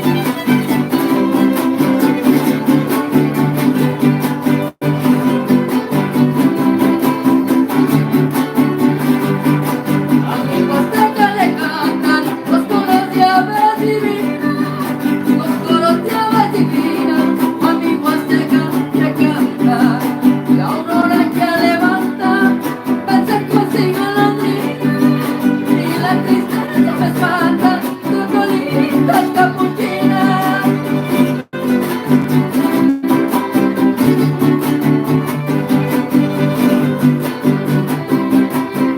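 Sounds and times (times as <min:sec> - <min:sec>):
strummed guitars: 0:00.0 - 0:38.9.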